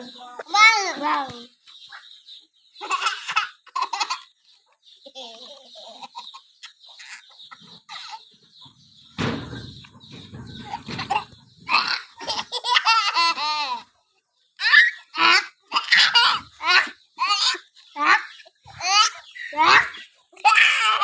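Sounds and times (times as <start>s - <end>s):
baby laughing: 2.8s - 4.3s, 10.7s - 13.9s, 14.6s - 21.0s.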